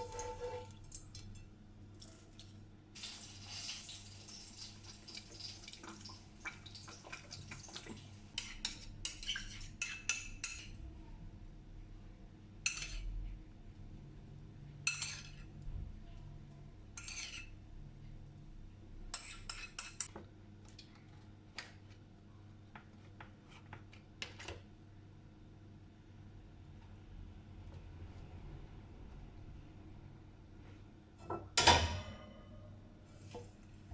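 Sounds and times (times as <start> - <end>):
dishes and cutlery clinking: 0.0 - 1.5, 12.6 - 13.1, 14.8 - 15.5, 17.0 - 17.6, 19.1 - 20.1.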